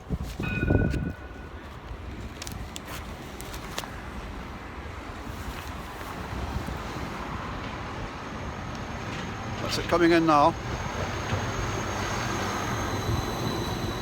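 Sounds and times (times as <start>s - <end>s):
wind buffeting microphone: 0.0s - 2.8s
tram rumble: 4.0s - 14.0s.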